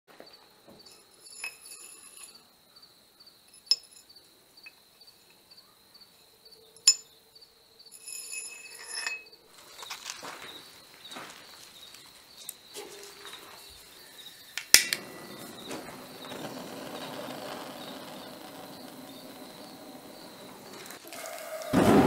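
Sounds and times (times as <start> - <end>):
metal clinks: 0.8 - 2.5, 3.4 - 5.4, 6.8 - 7.2, 7.9 - 9.3
metal ringing tones: 0.8 - 2.5, 7.9 - 9.4
insect chirping rapidly: 8.6 - 22.0.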